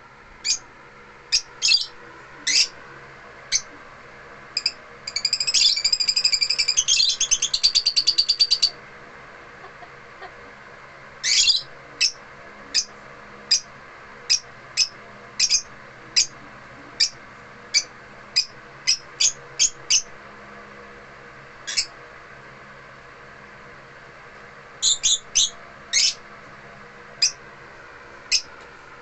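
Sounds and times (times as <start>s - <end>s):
lovebirds shrill chirps: 0.4s - 0.6s, 1.3s - 2.8s, 4.6s - 8.8s, 11.2s - 12.9s, 14.3s - 16.3s, 17.0s - 20.1s, 21.7s - 21.9s, 24.8s - 26.2s, 28.3s - 28.5s.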